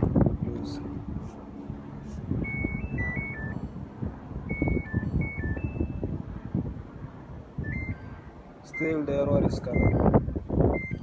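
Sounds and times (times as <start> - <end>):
washer stepped electronic beeps: 2.4 - 3.7, 4.5 - 6.1, 7.6 - 9.0, 9.6 - 10.1, 10.7 - 11.0.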